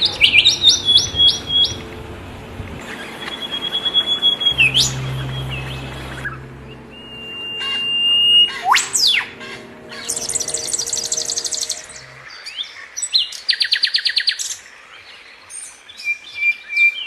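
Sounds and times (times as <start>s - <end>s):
birds whistling calls: 0.0s - 1.9s, 2.8s - 12.7s
low hum: 0.0s - 12.3s
bird fast high trill: 2.8s - 12.3s
bird swooping call: 2.8s - 12.3s.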